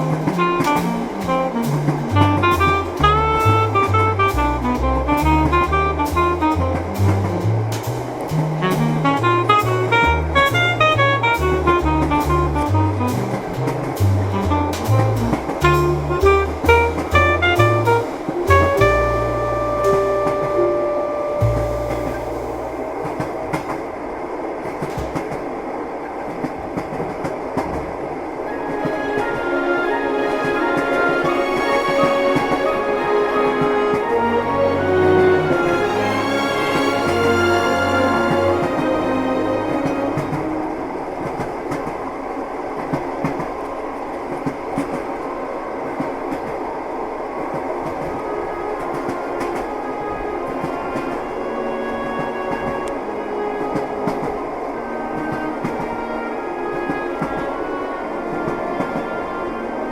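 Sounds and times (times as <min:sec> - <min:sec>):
wheels clicking over rail joints: 0:00.0 - 0:04.5, 0:05.3 - 0:20.6, 0:21.4 - 0:29.4, 0:39.8 - 0:57.7
low thumps: 0:00.0 - 0:23.4
railway carriage rumbling: 0:00.0 - 0:59.9.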